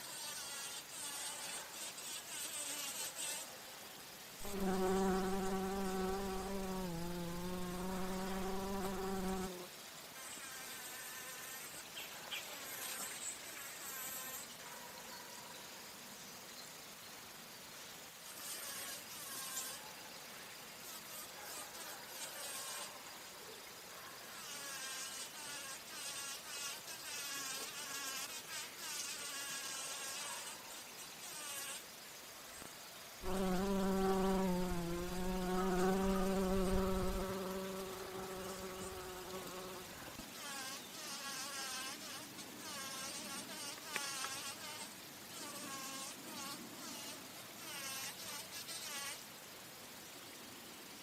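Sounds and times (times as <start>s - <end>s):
bumblebee buzzing: 0.0s - 3.5s, 4.4s - 11.8s, 24.4s - 30.6s, 33.2s - 49.2s.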